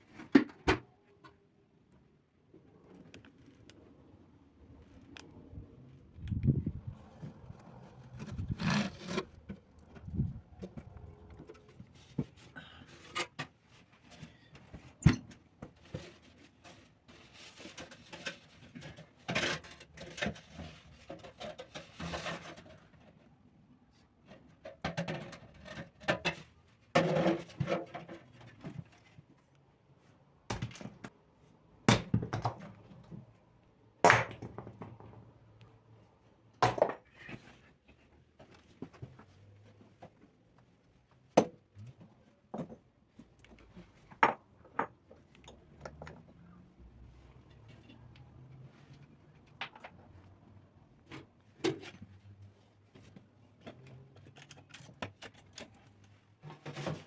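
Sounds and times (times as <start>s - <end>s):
handling knocks and scrapes: 6.5s - 23.3s, 51.0s - 57.0s.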